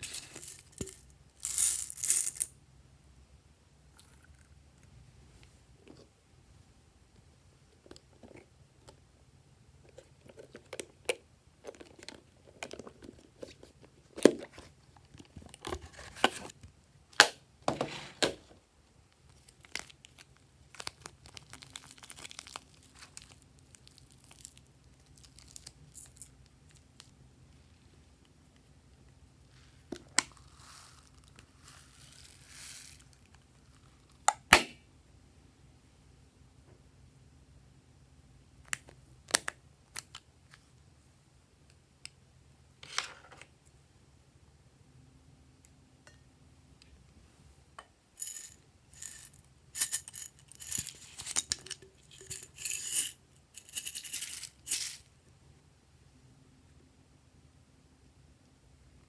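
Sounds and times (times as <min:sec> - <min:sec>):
small hard pieces rattling: 0:00.0 - 0:02.5, 0:48.2 - 0:55.0.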